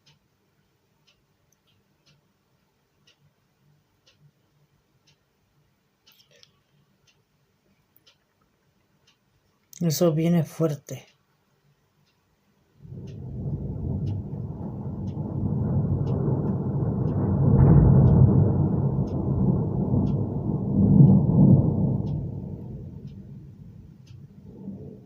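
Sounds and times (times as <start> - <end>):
faint ticking: 0.0 - 25.0
thunder rolling: 12.8 - 25.0.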